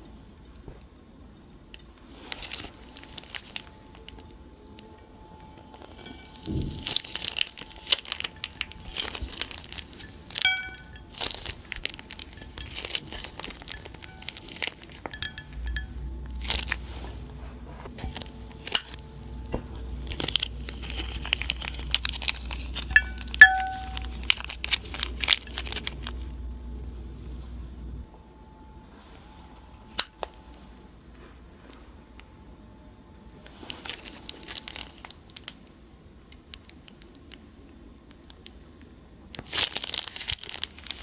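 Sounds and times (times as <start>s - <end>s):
plastic bags crinkling: 5.8s - 15.5s, 16.3s - 23.4s, 33.7s - 35.6s, 39.4s - 41.0s.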